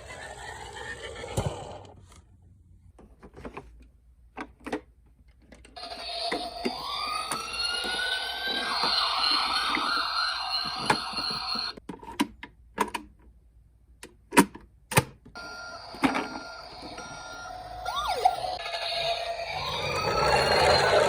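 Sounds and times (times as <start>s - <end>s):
toy cars clicking and knocking: 5.4s - 13.2s
toy emergency vehicle siren: 5.8s - 11.8s, 15.4s - 21.0s
electronic beeps: 15.4s - 21.0s.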